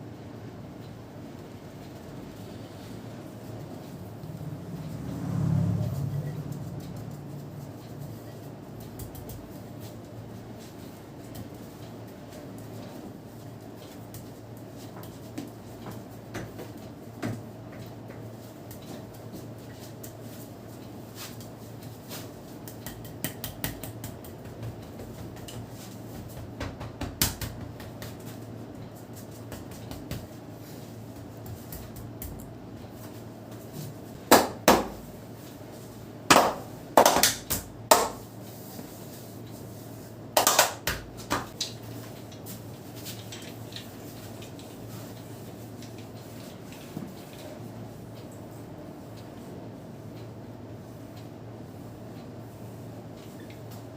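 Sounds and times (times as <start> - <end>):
steady low hum: 0.0 - 53.9
sharp slaps on body: 34.3 - 35.0, 36.3 - 38.2.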